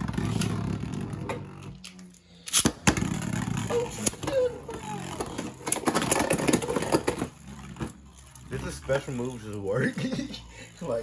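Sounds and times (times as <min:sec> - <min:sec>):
spinning tops whirring: 0:03.0 - 0:11.0.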